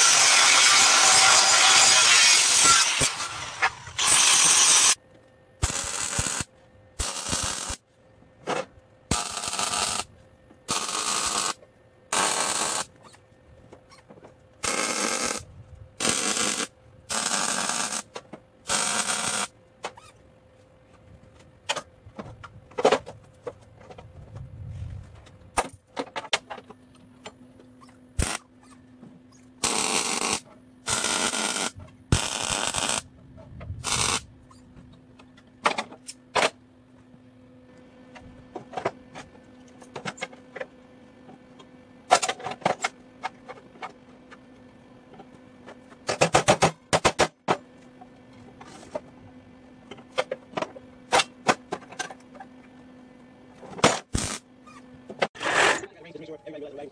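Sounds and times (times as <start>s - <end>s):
welder arc bursts: 0.0s - 5.0s, 5.6s - 7.8s, 9.1s - 10.1s, 10.7s - 12.9s, 14.6s - 18.1s, 18.7s - 19.5s, 28.2s - 28.5s, 29.6s - 33.1s, 33.8s - 34.3s, 54.1s - 54.4s.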